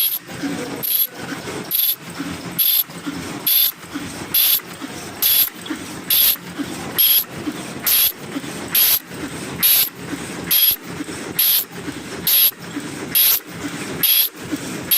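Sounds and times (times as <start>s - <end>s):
machine clattering: 0.0s - 14.9s
machine hiss: 1.7s - 2.0s, 2.6s - 2.8s, 3.5s - 3.8s, 4.4s - 4.6s, 5.2s - 5.5s, 6.1s - 6.4s, 7.0s - 7.2s, 7.8s - 8.1s, 8.7s - 9.0s, 9.6s - 9.9s, 10.5s - 10.8s, 11.4s - 13.4s, 14.0s - 14.3s.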